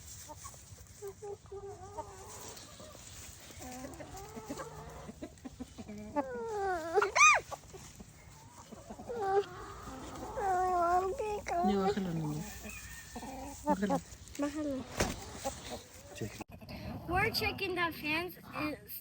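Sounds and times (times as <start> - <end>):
chickens clucking: 0.0 - 16.8
chicken squawk: 0.4 - 11.0.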